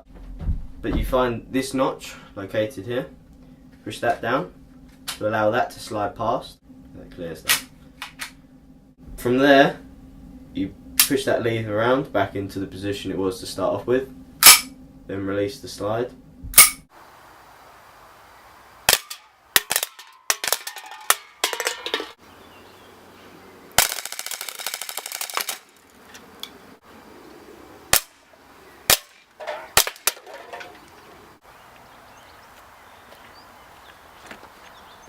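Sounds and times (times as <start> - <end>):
airsoft pistol firing: 23.8 - 25.7, 28.9 - 29.2.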